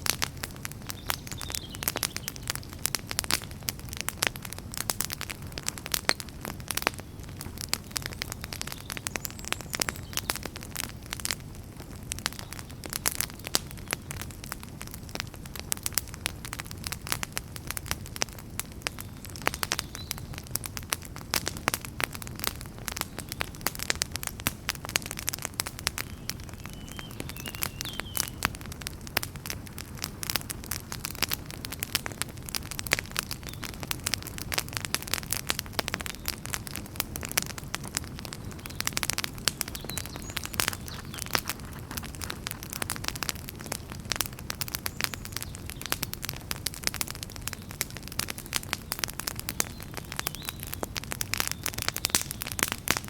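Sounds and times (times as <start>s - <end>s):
campfire crackling and popping: 0.0s - 53.0s
faint distant bird call: 26.0s - 28.6s, 38.3s - 43.2s.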